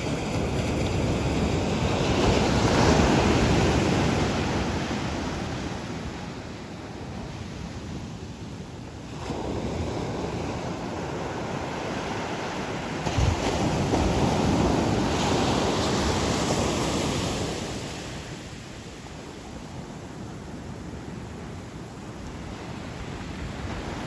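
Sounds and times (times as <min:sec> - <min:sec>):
sea surf on beach: 0:00.0 - 0:24.0.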